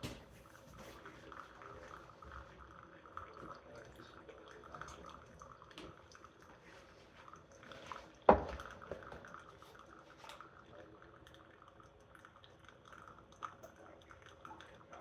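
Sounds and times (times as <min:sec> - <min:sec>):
coffee maker brewing: 0:00.0 - 0:15.0
coffee dripping into cup: 0:01.0 - 0:15.0.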